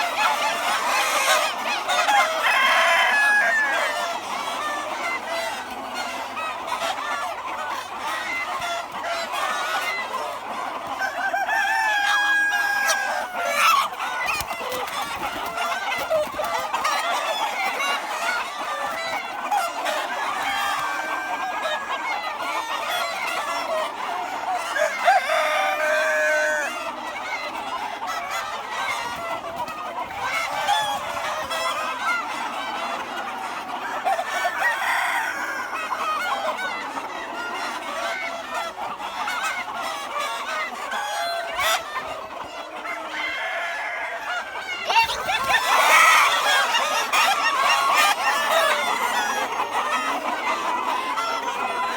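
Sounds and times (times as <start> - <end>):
roosters crowing: 0.0 - 6.4, 9.6 - 23.6, 24.3 - 27.4, 33.8 - 36.8, 43.0 - 51.9
chickens clucking: 0.0 - 51.9.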